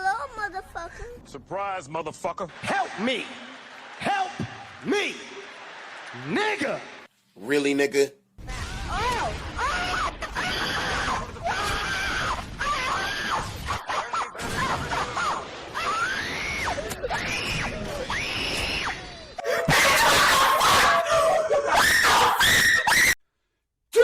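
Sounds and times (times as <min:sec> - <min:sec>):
harsh screaming and noise: 0:14.5 - 0:23.2
high-pitched screams: 0:14.5 - 0:23.2.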